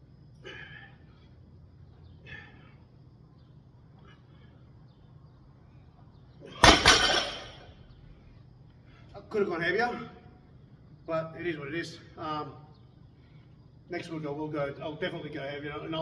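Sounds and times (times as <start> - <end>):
barbell crashing on floor: 6.6 - 7.7.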